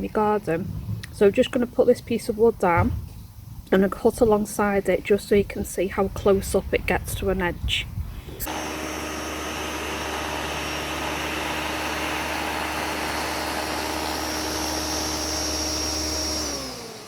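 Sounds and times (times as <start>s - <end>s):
electric hover mower running: 8.4s - 17.0s.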